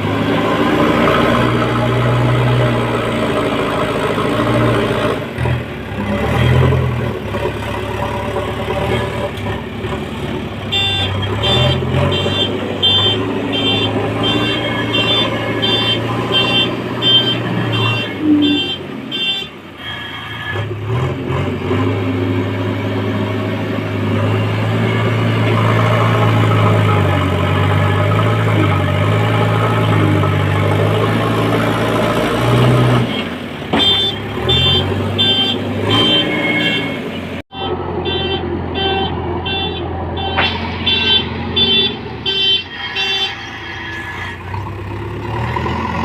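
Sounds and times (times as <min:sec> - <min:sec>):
diesel engine revving: 0:00.0 - 0:46.0.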